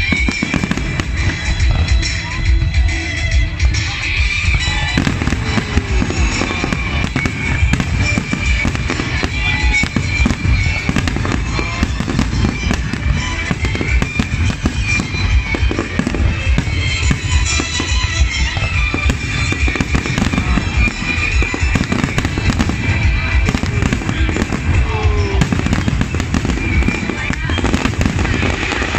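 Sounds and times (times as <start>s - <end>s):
fireworks bursting and crackling: 0.0s - 28.9s
music playing: 0.0s - 28.9s.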